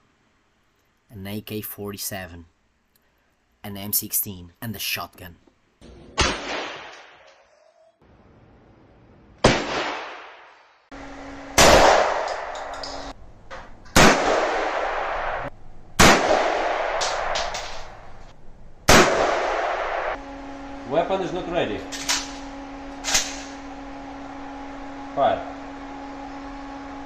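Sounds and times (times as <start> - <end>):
gunshots with echoing tail: 6.1 - 7.2, 9.4 - 10.6, 14.0 - 17.5, 18.9 - 20.2.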